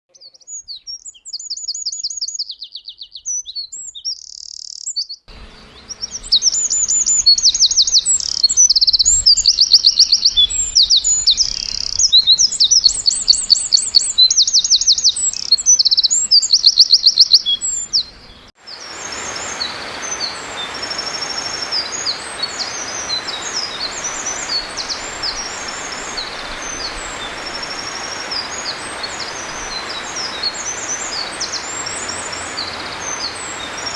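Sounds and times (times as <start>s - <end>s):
bird singing trills: 0.1s - 33.9s
steady rushing hiss: 5.3s - 16.2s, 18.1s - 33.9s.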